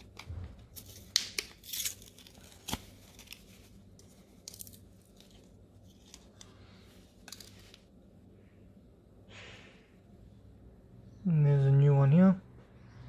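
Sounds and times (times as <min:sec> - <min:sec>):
packaging crinkling and tearing: 0:00.0 - 0:07.9.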